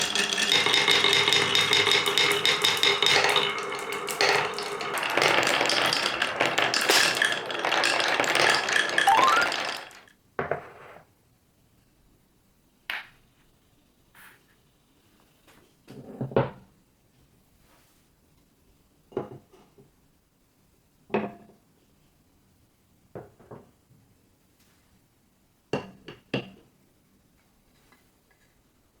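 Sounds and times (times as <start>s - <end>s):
balls clattering down wooden run: 0.0s - 11.0s
ringing tones: 9.0s - 9.9s.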